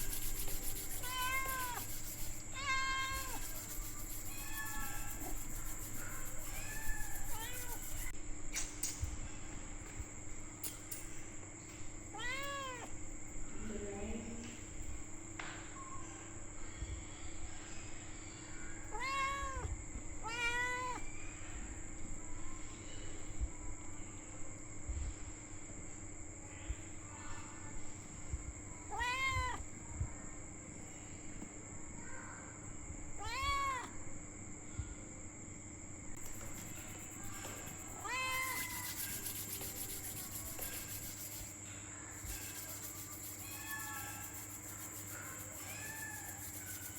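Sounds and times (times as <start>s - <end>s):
hiss: 0.0s - 8.1s
steady hum: 0.0s - 8.4s, 34.0s - 46.9s
kitten meowing: 1.0s - 1.8s, 4.3s - 5.3s, 6.5s - 7.9s, 18.9s - 21.0s, 28.9s - 29.6s, 33.2s - 33.9s.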